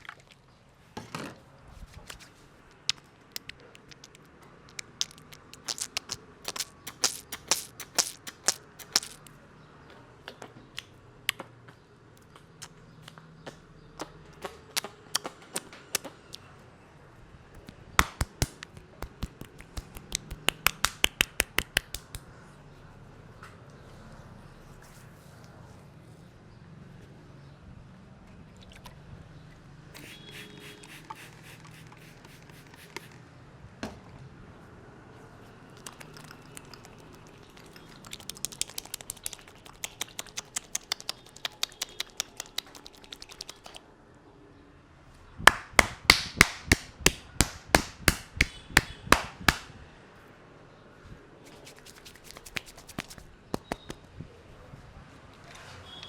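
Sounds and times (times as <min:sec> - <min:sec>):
hands tapping on head: 0:03.4 - 0:09.3, 0:17.6 - 0:22.2, 0:38.1 - 0:43.8, 0:45.5 - 0:49.7, 0:52.2 - 0:54.0.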